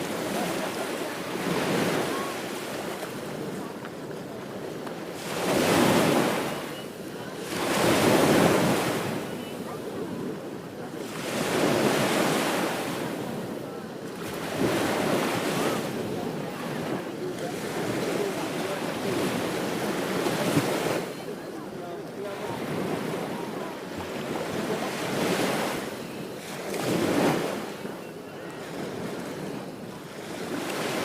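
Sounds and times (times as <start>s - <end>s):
ocean waves breaking on beach: 0.0s - 31.0s.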